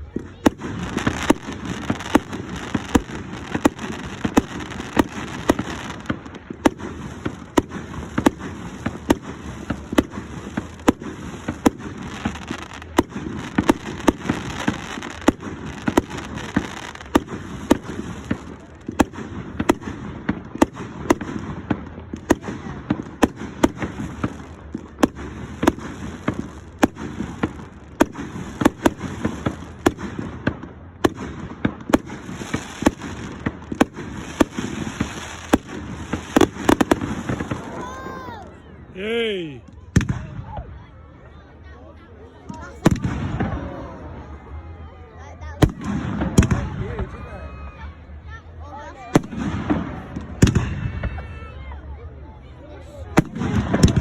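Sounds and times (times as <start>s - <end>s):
fireworks crackle: 0.0s - 40.5s
fireworks bangs: 0.0s - 40.8s, 42.4s - 44.6s, 45.6s - 47.5s, 49.0s - 51.9s, 53.0s - 54.0s.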